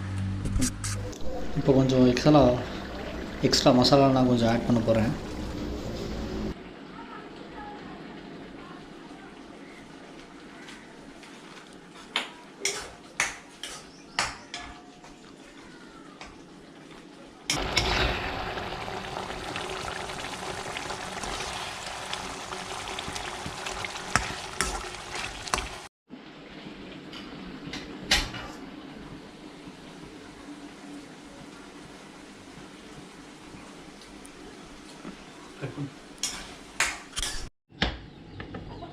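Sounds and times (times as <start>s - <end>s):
food sizzling in a pan: 17.5s - 25.9s.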